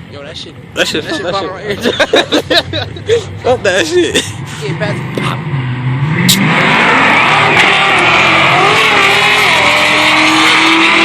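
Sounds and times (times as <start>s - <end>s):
car engine revving hard: 4.2s - 11.0s.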